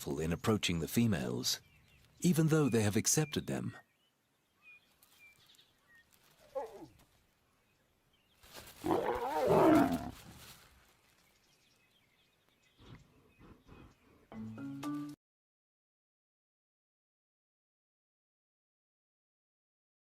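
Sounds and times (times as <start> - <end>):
lion snarling: 8.8 - 10.2.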